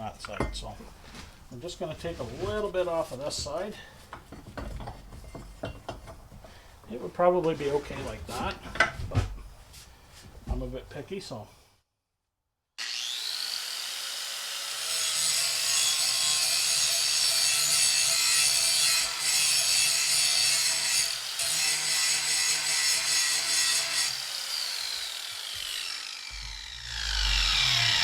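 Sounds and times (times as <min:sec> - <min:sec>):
power grinder grinding metal: 0:12.8 - 0:28.0.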